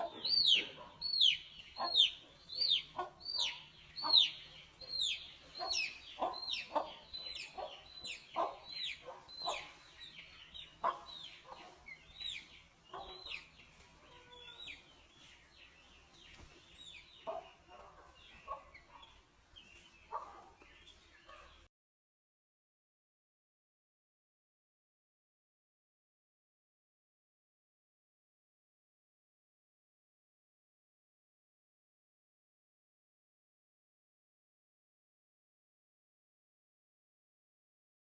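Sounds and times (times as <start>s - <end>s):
chickens peeping: 0.0s - 21.6s.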